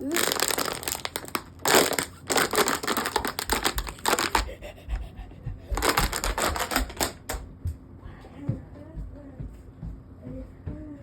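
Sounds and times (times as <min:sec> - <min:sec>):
soft low thumps: 0:07.4 - 0:11.0.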